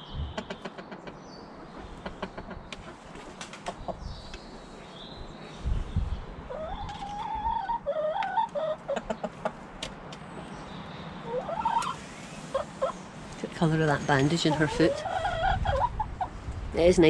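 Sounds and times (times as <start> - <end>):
hen clucking: 0.4 - 3.0, 6.5 - 9.7, 11.2 - 13.0, 13.6 - 16.4.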